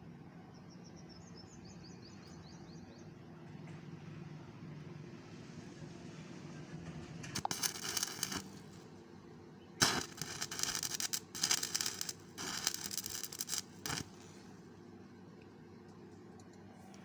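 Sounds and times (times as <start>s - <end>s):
welding arc crackling: 7.4s - 8.8s, 9.8s - 14.5s.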